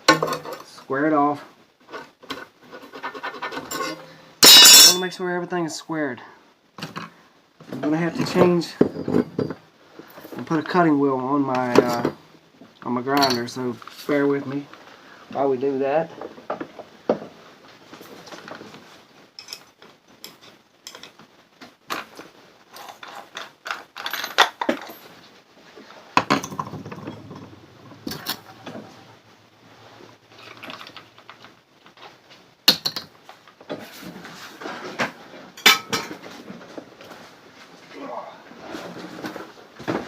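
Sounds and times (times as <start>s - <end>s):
metal clinks and rattles: 3.6s - 5.2s, 22.7s - 25.2s, 26.2s - 28.8s.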